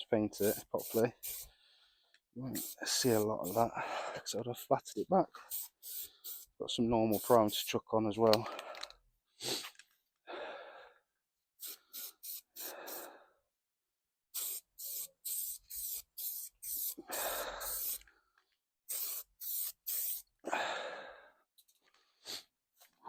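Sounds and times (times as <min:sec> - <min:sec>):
aerosol can spraying: 0:00.3 - 0:01.5, 0:02.5 - 0:03.7, 0:05.4 - 0:07.7, 0:11.6 - 0:13.0, 0:14.4 - 0:18.0, 0:18.9 - 0:20.3.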